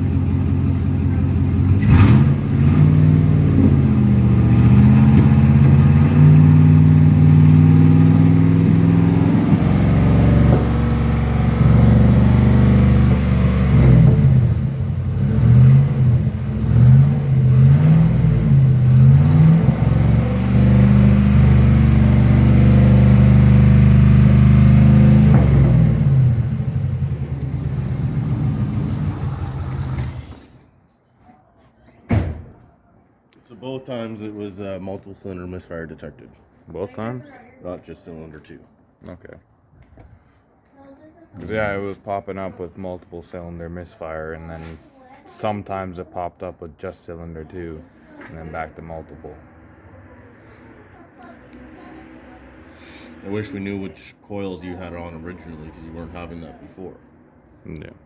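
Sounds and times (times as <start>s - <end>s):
misfiring truck engine revving: 0.0s - 30.6s.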